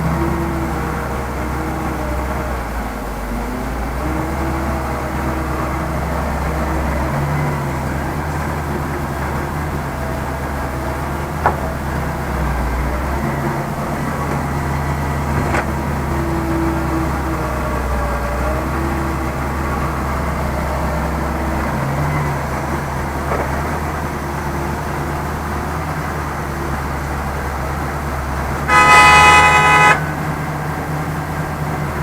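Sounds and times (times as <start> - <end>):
heavy diesel engine running: 0.0 - 32.0.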